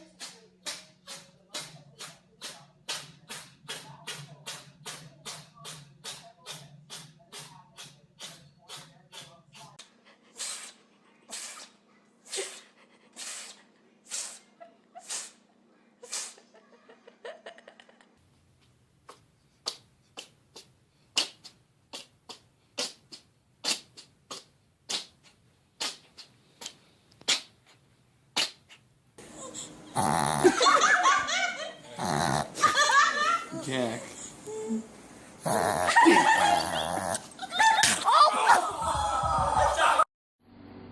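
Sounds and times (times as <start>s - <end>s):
pet sneezing: 10.3s - 15.4s, 19.6s - 28.8s.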